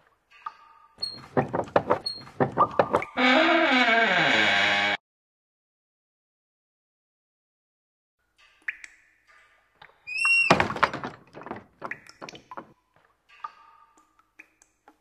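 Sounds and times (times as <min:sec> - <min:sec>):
loud clattering thud: 0:10.5 - 0:11.9.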